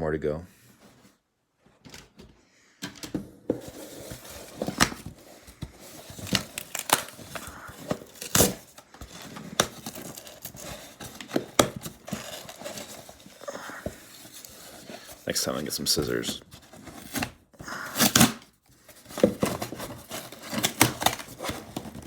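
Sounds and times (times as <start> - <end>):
paper crinkling: 3.6 - 22.0
packaging being torn open: 6.0 - 14.4, 17.8 - 18.4, 19.4 - 22.0.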